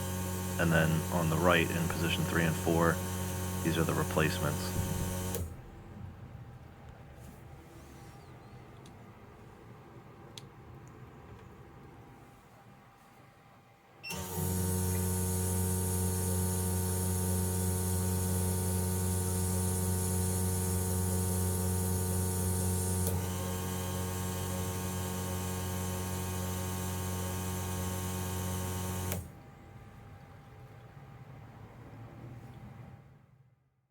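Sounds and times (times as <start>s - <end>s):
fuel injector test bench running: 0.0s - 5.9s, 14.1s - 29.4s.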